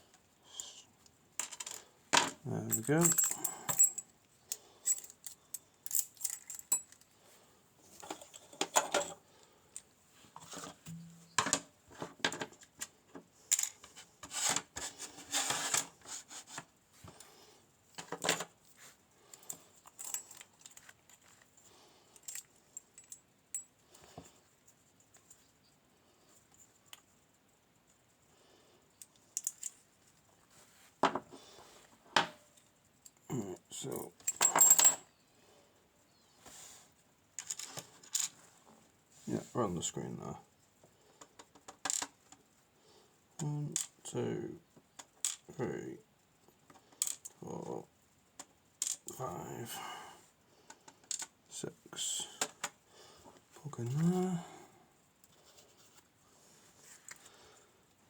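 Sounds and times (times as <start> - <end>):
metal lock parts clinking: 1.4 - 4.1, 4.8 - 7.1, 29.4 - 29.8, 33.9 - 35.1, 47.0 - 47.4, 48.8 - 49.2.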